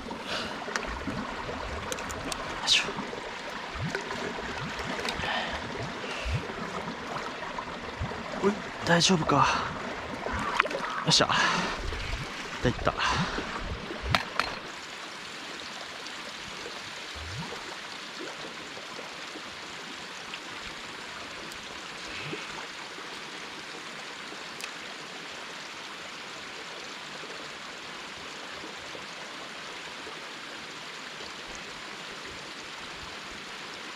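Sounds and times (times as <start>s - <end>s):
running water rushing: 0.0s - 33.9s.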